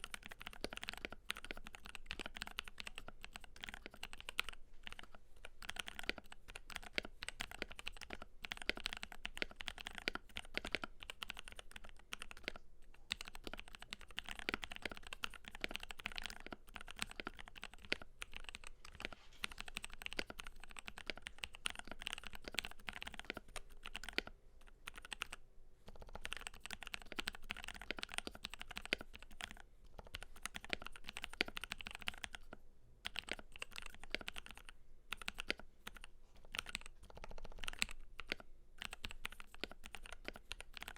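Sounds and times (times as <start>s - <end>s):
fast typing on mechanical keyboard: 0.0s - 40.9s.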